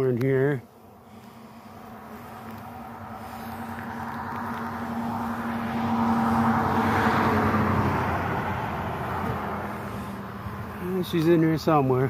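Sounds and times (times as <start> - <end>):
bee swarm humming: 0.6 - 12.0
passing vehicle: 0.7 - 12.0.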